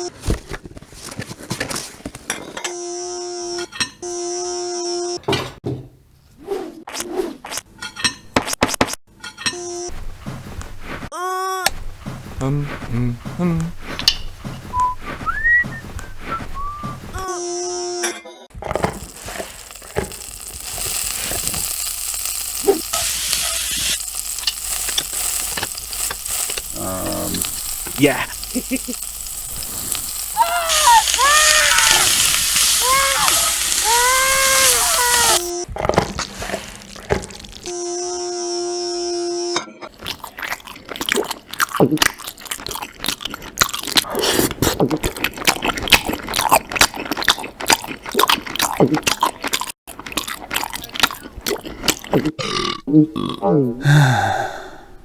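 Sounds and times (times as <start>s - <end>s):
food sizzling in a frying pan: 18.7s - 37.8s.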